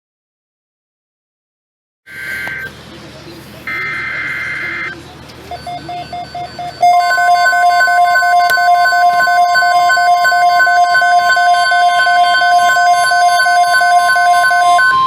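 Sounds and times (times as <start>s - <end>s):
rapid beeps: 2.1s - 2.7s, 3.7s - 15.0s
rapid pulsing beep: 2.1s - 2.7s, 3.7s - 15.0s
steady warning alarm tone: 2.1s - 2.8s, 3.7s - 15.0s.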